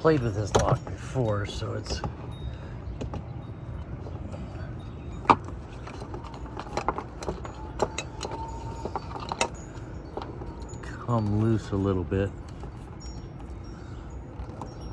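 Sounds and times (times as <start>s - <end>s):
metallic clicks and rattles of lock: 5.2s - 10.9s.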